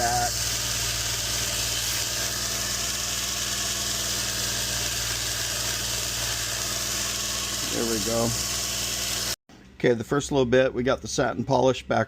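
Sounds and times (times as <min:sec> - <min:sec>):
belt grinder running: 0:00.0 - 0:09.4
blade polishing on belt: 0:00.0 - 0:09.4.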